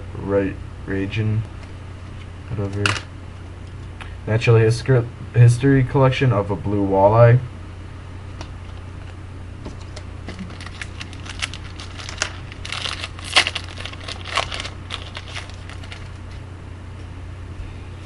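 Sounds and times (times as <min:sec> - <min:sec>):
steady low hum: 0:00.0 - 0:18.0
wrapper tearing and crinkling: 0:10.3 - 0:16.4.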